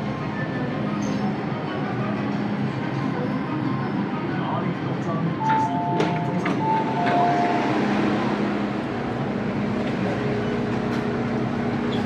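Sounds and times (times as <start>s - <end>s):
train interior rumble: 0.0s - 12.0s
two-tone beeping: 5.5s - 7.6s.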